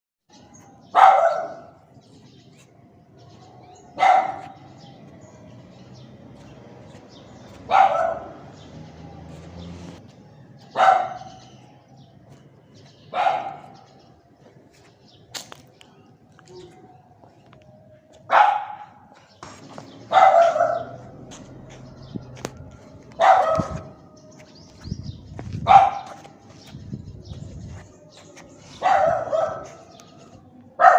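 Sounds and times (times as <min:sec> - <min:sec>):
dog barking: 0:00.8 - 0:01.8, 0:03.9 - 0:04.9, 0:07.4 - 0:08.7, 0:10.7 - 0:11.5, 0:13.1 - 0:14.0, 0:18.3 - 0:19.1, 0:20.0 - 0:21.4, 0:23.1 - 0:24.0, 0:25.6 - 0:26.3, 0:28.6 - 0:30.1.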